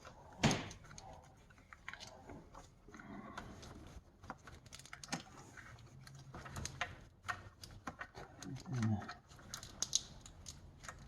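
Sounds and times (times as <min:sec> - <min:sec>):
small plastic clicks: 0:06.1 - 0:11.0.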